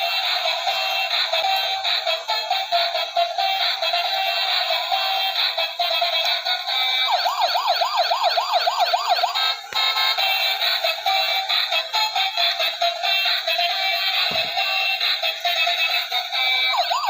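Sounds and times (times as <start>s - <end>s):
fast warbling toy siren: 0.0s - 14.2s, 14.8s - 17.0s
tinny electronic toy tune: 6.7s - 10.4s, 13.7s - 17.0s.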